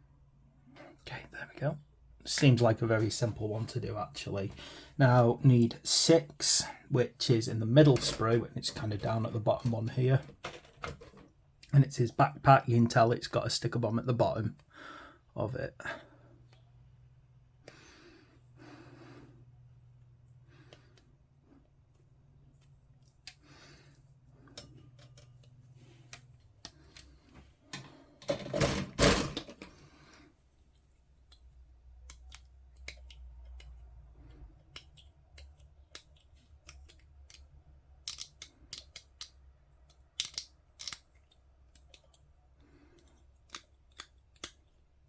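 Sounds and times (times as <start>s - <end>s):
plastic parts clicking and rattling: 7.8s - 11.4s, 24.4s - 29.8s, 30.7s - 44.9s.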